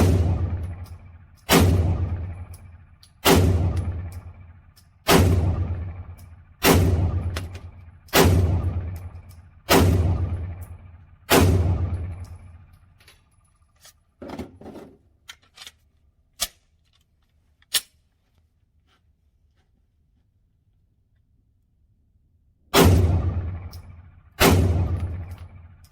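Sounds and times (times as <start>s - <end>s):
pistol shots with echo: 0.0s - 12.7s, 22.8s - 25.9s
faint sharp cracks and clinks: 0.0s - 14.2s, 23.3s - 25.9s.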